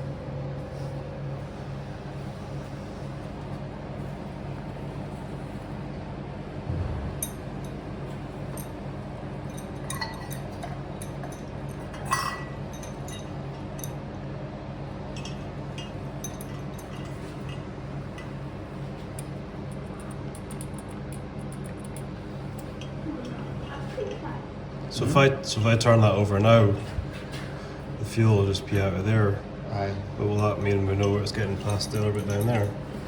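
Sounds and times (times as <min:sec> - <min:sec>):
steady low hum: 0:00.0 - 0:33.0
metal parts and tools clinking: 0:30.4 - 0:32.8.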